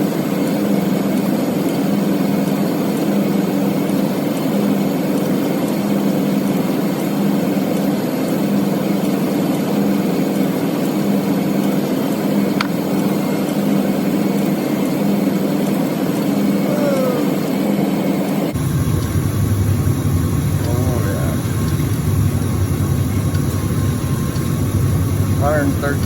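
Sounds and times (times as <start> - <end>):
truck engine idling: 11.0 - 26.0.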